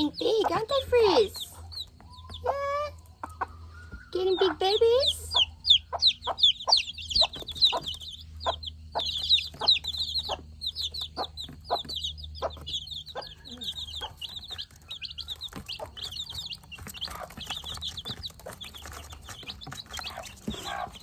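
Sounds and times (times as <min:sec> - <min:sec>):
chicks peeping: 0:00.0 - 0:21.0
hen clucking: 0:00.0 - 0:21.0.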